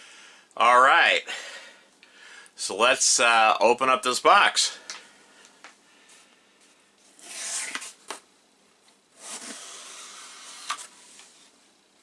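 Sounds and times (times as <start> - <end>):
packing box rustling and scraping: 7.1 - 8.2, 9.1 - 11.6.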